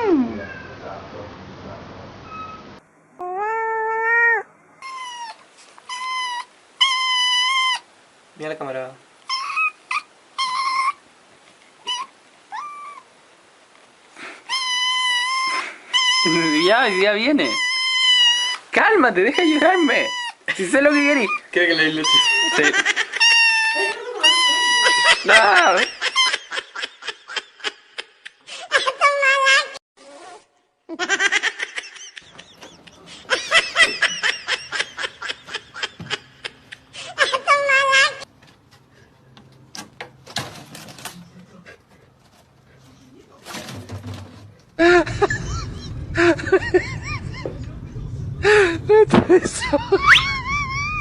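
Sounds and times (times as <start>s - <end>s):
cat meowing: 0.1s - 0.8s
person laughing: 22.2s - 29.1s, 30.9s - 38.2s, 44.8s - 51.0s.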